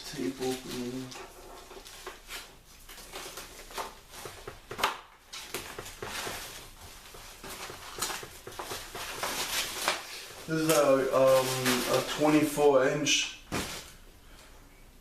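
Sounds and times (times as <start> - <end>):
cardboard packaging rustling: 0.0 - 12.6, 13.5 - 14.0
packing tape tearing: 7.4 - 12.1.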